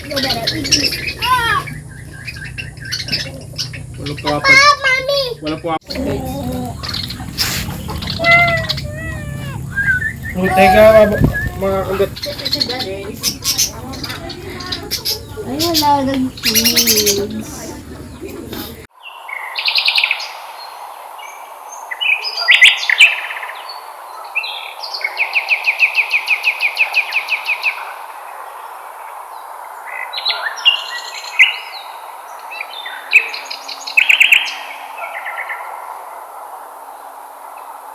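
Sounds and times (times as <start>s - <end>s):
lovebirds chirping: 0.0s - 18.9s.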